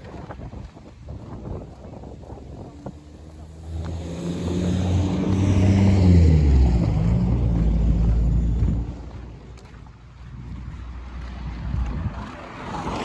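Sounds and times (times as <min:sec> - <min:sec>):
motor vehicle passing: 0:01.8 - 0:13.0.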